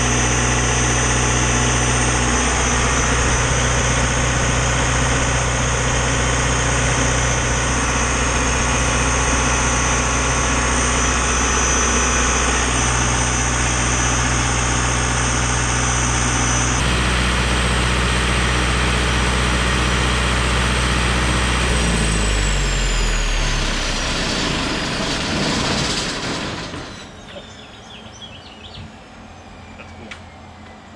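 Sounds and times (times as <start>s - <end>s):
diesel generator running: 0.0s - 30.9s
turbocharger whine: 0.0s - 30.9s.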